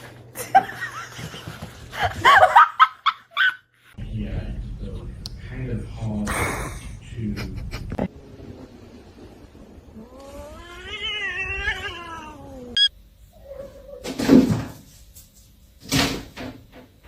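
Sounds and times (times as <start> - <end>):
cat yowling: 10.0 - 14.1.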